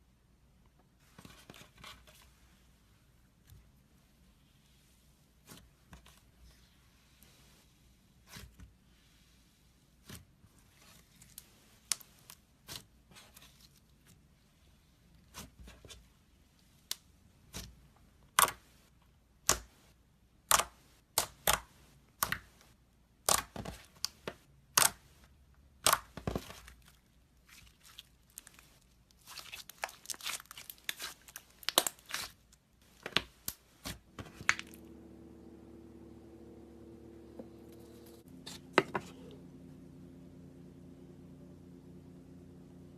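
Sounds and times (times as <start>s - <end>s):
slime popping and crackling: 29.2s - 32.4s.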